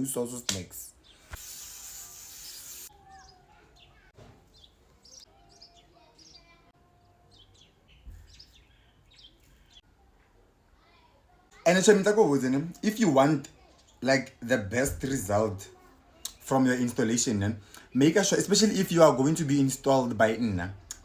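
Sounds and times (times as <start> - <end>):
faint bird chirps: 2.8 - 10.2.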